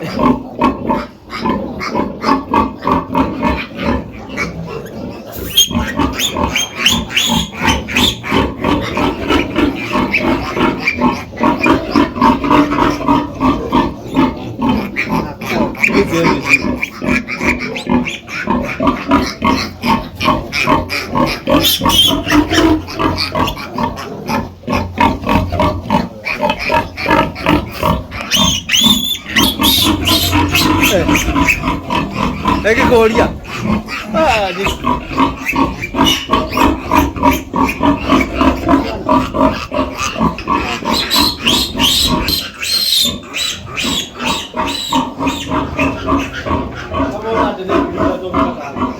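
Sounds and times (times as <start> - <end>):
pigs grunting and squealing: 0.0 - 48.9.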